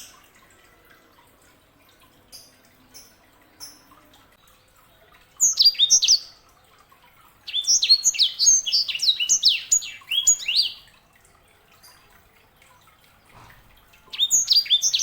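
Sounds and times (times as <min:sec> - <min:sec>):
canary singing: 0:05.4 - 0:06.4, 0:07.5 - 0:10.9, 0:14.1 - 0:15.0.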